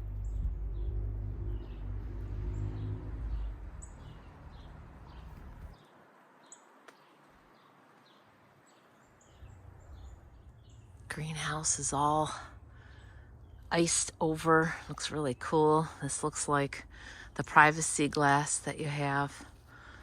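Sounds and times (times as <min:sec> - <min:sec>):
low rumble: 0:00.0 - 0:05.8
small bird chirping: 0:02.4 - 0:11.8.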